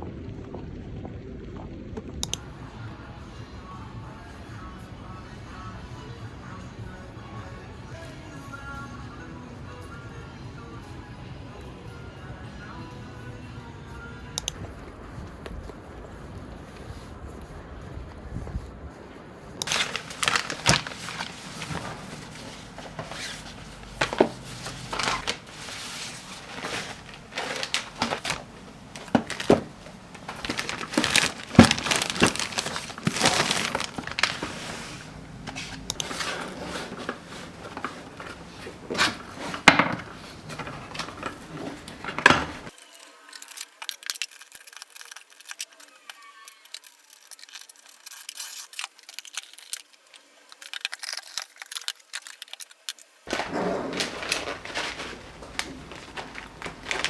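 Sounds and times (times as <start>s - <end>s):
objects handled with clicks and knocks: 19.6s - 57.0s.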